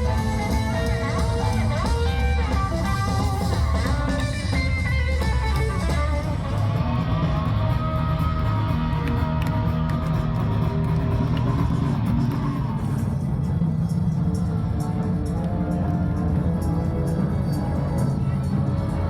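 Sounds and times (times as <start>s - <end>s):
strummed guitar music: 0.0s - 11.3s
steady bass: 0.0s - 19.0s.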